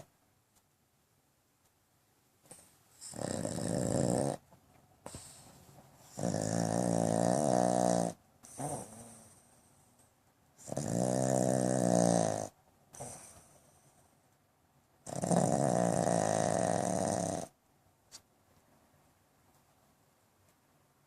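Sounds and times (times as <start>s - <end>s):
dog snoring: 2.5s - 4.4s, 5.1s - 9.9s, 10.6s - 14.0s, 15.0s - 17.6s.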